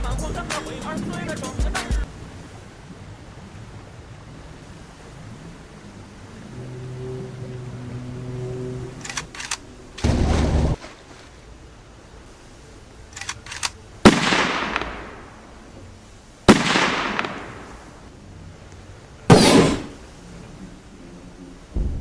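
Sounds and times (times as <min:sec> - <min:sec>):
crackling noise burst: 0:13.2 - 0:15.8, 0:16.5 - 0:18.1, 0:19.3 - 0:20.0
loud bangs with rushing tail: 0:16.5 - 0:18.0, 0:19.3 - 0:20.0.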